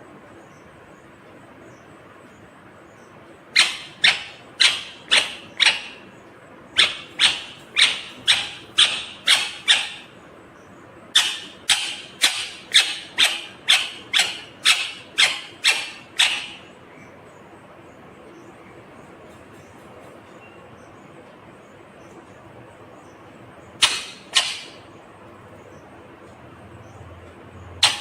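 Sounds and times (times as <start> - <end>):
parakeet giving harsh calls: 3.5 - 6.1, 6.7 - 10.2, 11.1 - 16.8, 23.8 - 25.0, 27.8 - 28.0.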